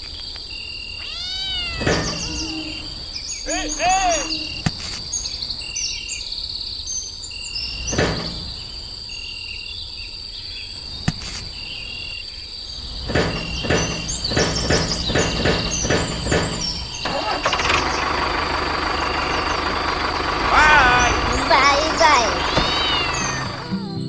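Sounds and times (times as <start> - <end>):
insects trilling: 0.0 - 24.0
birds calling: 0.8 - 9.9, 10.6 - 23.9
fast irregular rattling: 13.0 - 23.6.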